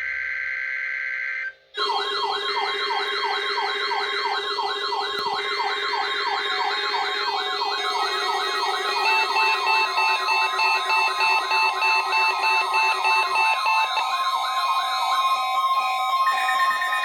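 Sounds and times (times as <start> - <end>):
warbling alert siren: 0.0 - 17.0
pulsing beep: 1.2 - 14.0.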